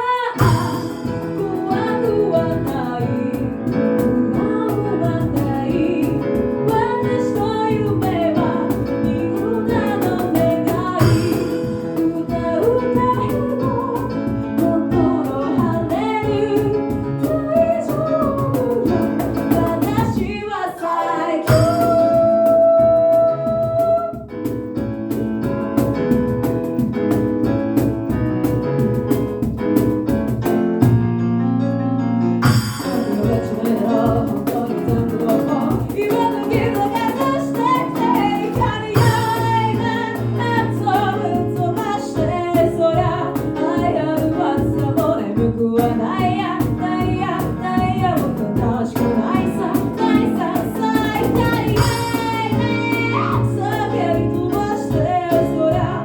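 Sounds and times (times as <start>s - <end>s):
vocal percussion beat: 0.0s - 26.7s, 32.4s - 56.0s
a cappella group singing in harmony: 19.9s - 22.6s.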